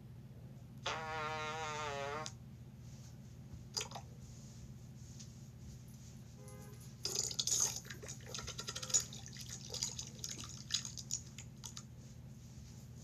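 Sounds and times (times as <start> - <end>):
sputtering fart sound: 0.8 - 2.4.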